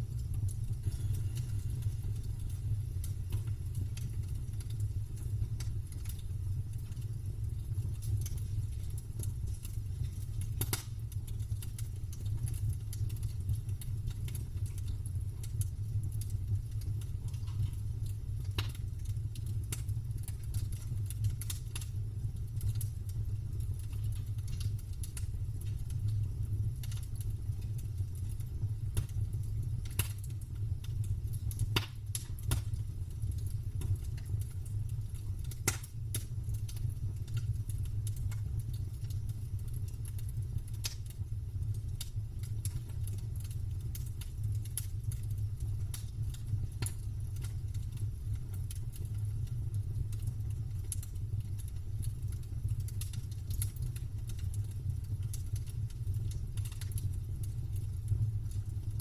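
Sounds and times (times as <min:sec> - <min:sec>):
steady low rumble: 0:00.0 - 0:18.6
campfire crackling: 0:00.0 - 0:59.0.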